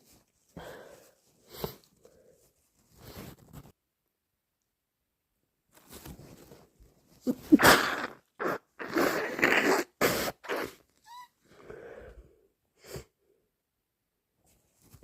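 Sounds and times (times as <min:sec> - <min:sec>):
person blowing nose: 0:07.2 - 0:11.3
person sneezing: 0:07.3 - 0:10.8.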